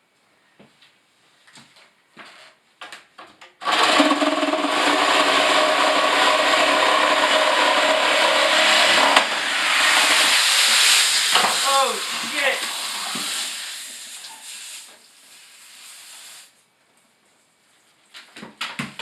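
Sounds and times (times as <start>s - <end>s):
power tool cutting into wall: 3.6s - 14.3s.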